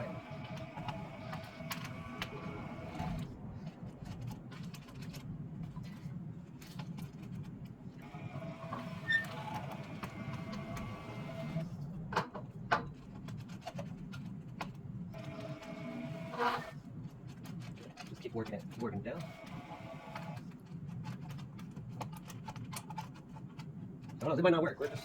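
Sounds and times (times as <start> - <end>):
spool squeaking: 8.0 - 11.2, 15.2 - 16.8, 24.2 - 25.0.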